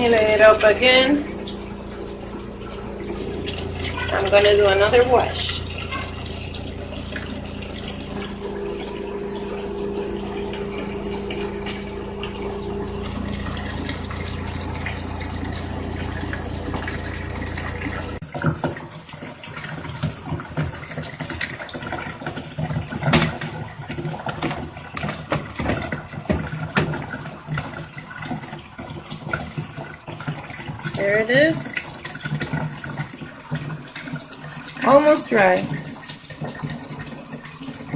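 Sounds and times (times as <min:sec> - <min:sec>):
spin-dryer motor humming: 0:00.0 - 0:18.2
water running into tub: 0:00.0 - 0:37.9.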